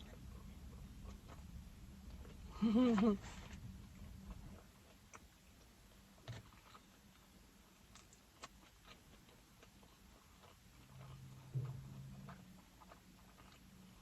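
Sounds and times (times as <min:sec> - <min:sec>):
low hum: 0:10.7 - 0:14.0.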